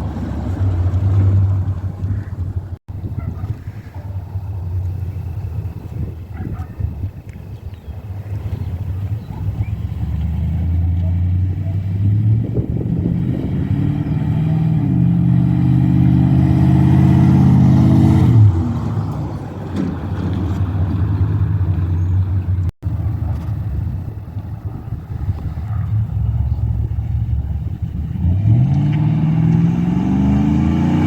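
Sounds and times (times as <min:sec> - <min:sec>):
pickup truck exhaust accelerating: 0:00.0 - 0:31.0.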